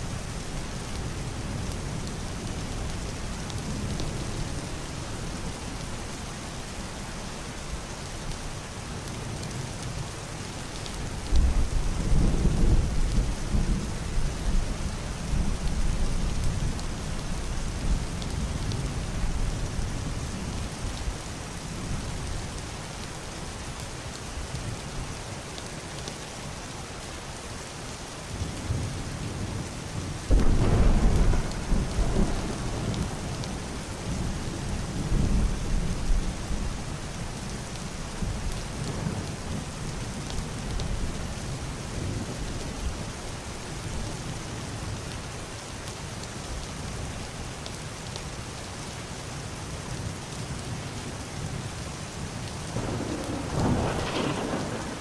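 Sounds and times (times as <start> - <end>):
heavy rain on roof and window: 0.0 - 55.0
thunder clap and rumbling: 30.3 - 36.2, 52.7 - 55.0.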